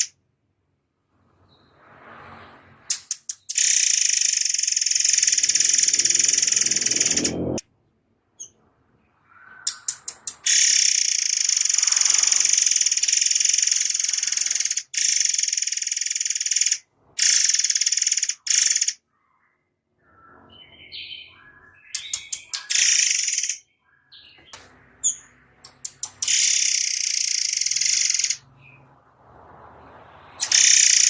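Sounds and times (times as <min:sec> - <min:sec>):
songbird trilling: 0:02.9 - 0:07.6, 0:09.3 - 0:19.0, 0:20.6 - 0:28.8, 0:30.4 - 0:31.0.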